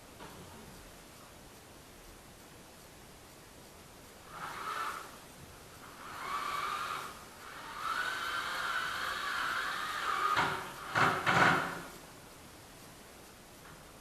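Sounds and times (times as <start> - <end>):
power drill whining: 4.3 - 5.2, 5.8 - 11.9.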